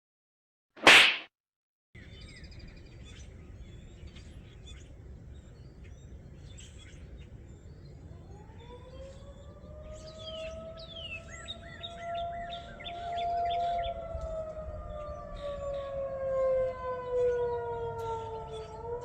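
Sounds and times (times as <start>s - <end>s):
bird chirps: 2.0s - 14.0s, 17.1s - 18.9s
warning siren winding up: 8.1s - 19.0s.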